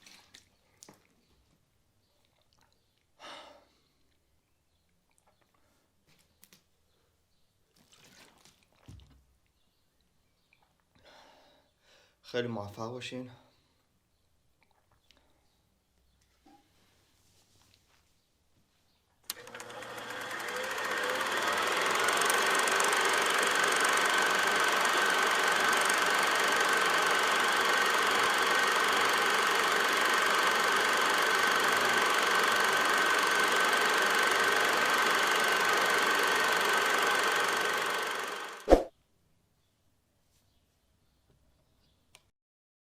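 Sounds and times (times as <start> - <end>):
motor running with high whine: 19.3 - 38.7.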